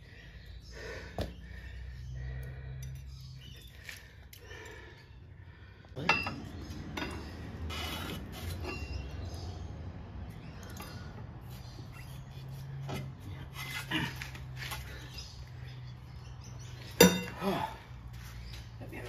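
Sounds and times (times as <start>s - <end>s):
metal clanking and scraping: 6.0s - 9.2s.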